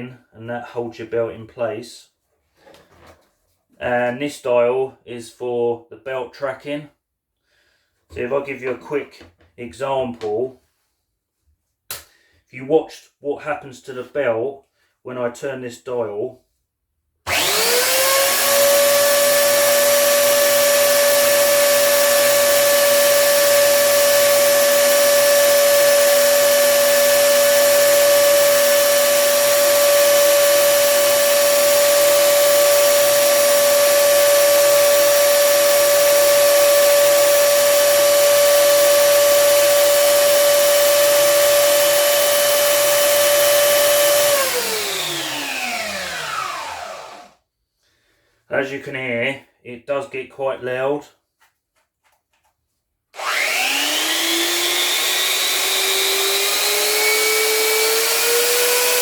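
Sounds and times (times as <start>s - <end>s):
belt sander whining: 17.3s - 47.4s, 53.2s - 59.0s.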